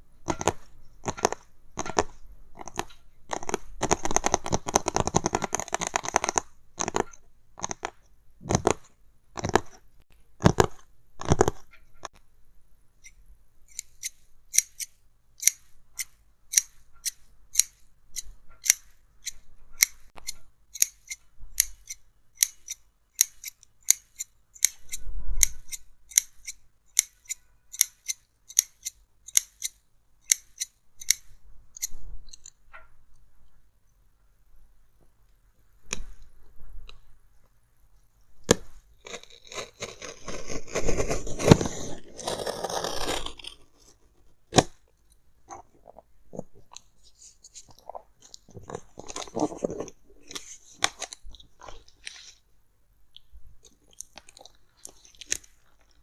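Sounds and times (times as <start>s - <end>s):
scratching on box: 0.2s - 7.9s, 39.0s - 44.7s.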